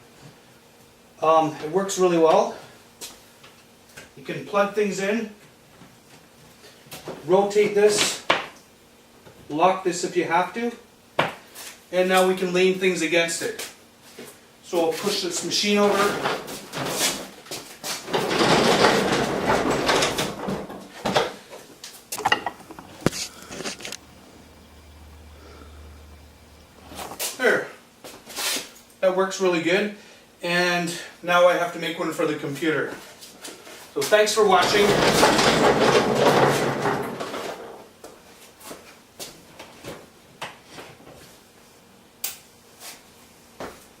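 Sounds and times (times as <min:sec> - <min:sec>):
wheeled machine rolling rumble: 0:15.5 - 0:21.5, 0:22.2 - 0:27.2, 0:34.3 - 0:37.9.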